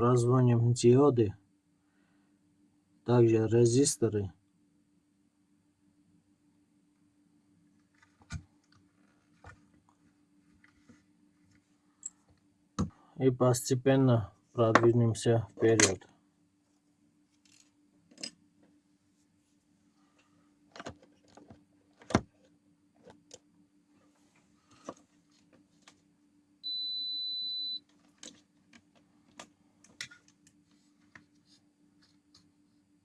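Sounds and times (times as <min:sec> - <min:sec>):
faint low hum: 0:00.0 - 0:33.0
multimeter test beep: 0:26.6 - 0:27.8.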